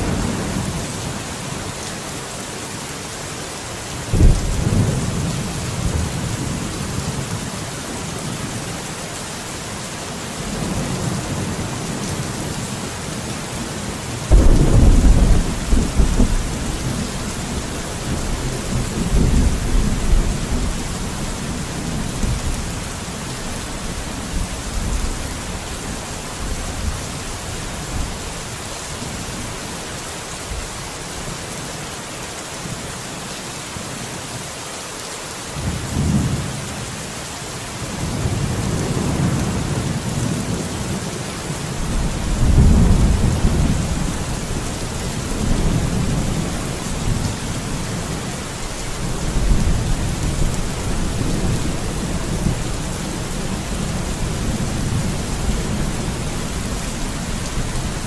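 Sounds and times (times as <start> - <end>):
heavy rain: 0.0 - 58.0
thunder rumbling: 4.1 - 7.2, 14.3 - 28.1, 41.8 - 58.0.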